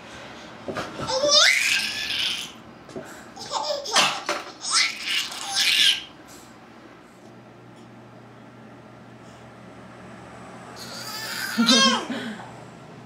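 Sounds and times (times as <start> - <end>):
baby laughing and squealing: 1.1 - 2.6, 3.4 - 6.1, 10.8 - 12.1.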